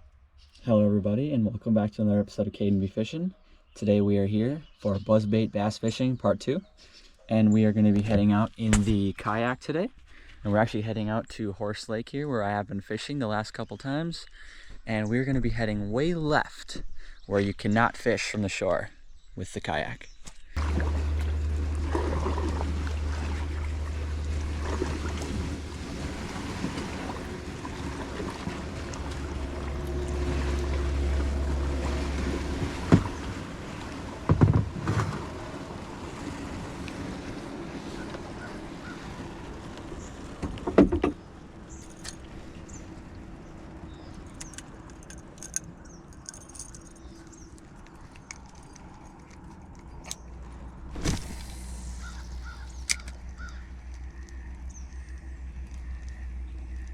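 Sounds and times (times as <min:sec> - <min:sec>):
sharp knocks: 0:34.3 - 0:35.2
faint bird calls: 0:37.8 - 0:39.1, 0:51.9 - 0:56.9.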